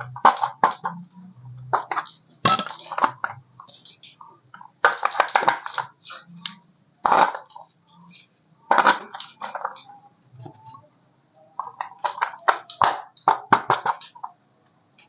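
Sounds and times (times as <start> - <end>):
toy and packaging clattering rustling: 1.7 - 10.8, 11.5 - 14.4.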